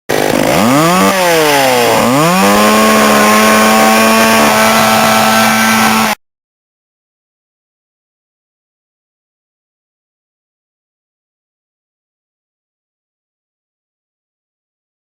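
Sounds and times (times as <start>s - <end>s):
small engine revving: 0.1s - 6.2s.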